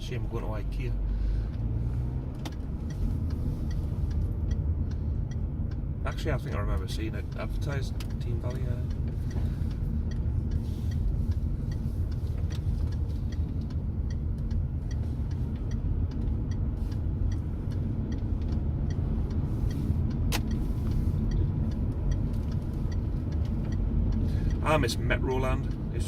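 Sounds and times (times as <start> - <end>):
car engine and tyre rumble: 0.0 - 26.0
sharp click: 20.1 - 21.0.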